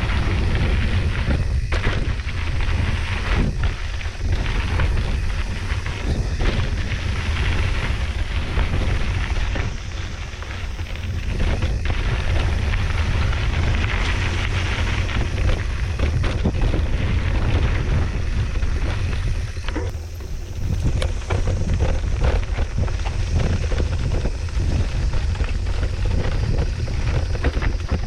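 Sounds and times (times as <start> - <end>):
bike knocks and rattles: 0.0 - 28.0
mountain bike rumbling on dirt: 0.0 - 28.0
wind buffeting microphone: 0.0 - 28.0.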